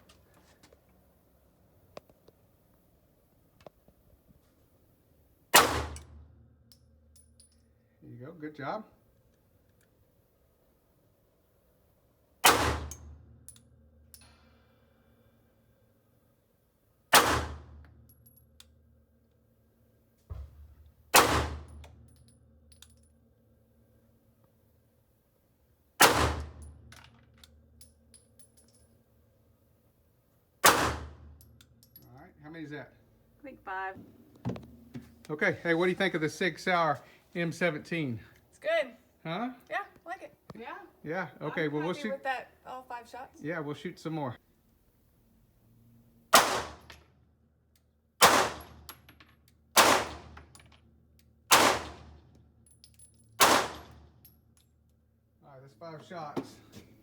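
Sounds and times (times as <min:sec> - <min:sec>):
pistol shots: 0:05.5 - 0:06.1, 0:12.4 - 0:13.0, 0:17.1 - 0:17.8, 0:21.1 - 0:21.8, 0:26.0 - 0:26.6, 0:30.6 - 0:31.3, 0:46.3 - 0:47.0, 0:48.2 - 0:48.9, 0:49.8 - 0:50.5, 0:51.5 - 0:52.2, 0:53.4 - 0:54.0.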